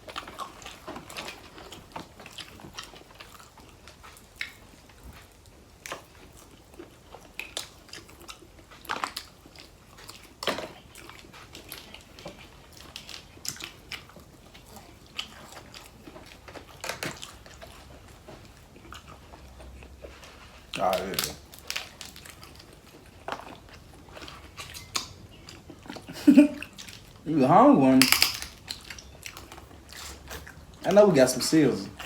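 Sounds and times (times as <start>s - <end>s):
biting chewing and crunching: 0.0s - 32.0s
sharp wet snaps: 20.8s - 25.8s, 27.9s - 31.0s.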